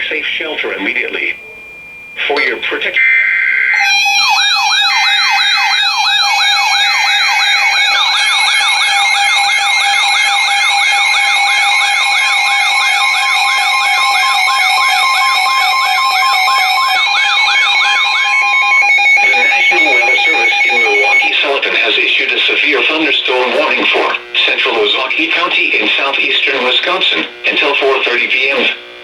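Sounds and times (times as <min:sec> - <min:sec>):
steady alert tones: 0:00.9 - 0:24.1
rising siren-like sweep: 0:03.0 - 0:21.6.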